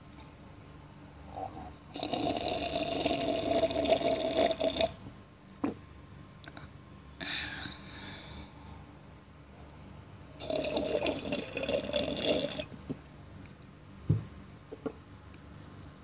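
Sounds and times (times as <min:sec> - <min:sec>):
person slurping coffee: 0:01.9 - 0:04.9, 0:10.4 - 0:12.7.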